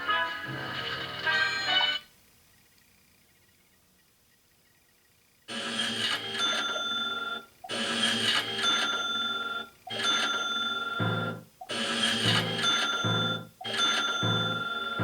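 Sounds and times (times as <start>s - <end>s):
bell-like ringing tones: 12.0s - 15.0s.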